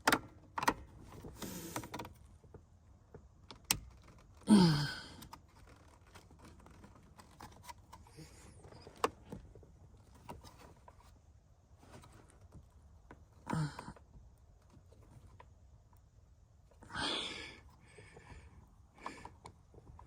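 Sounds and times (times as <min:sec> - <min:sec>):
person grunting: 0:04.5 - 0:05.2, 0:13.5 - 0:14.0.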